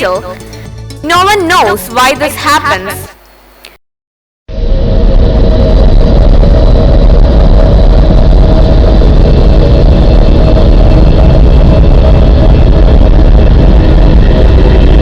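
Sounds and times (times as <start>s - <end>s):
faint steady tones: 0.0s - 3.8s
deep rumble: 4.5s - 15.0s.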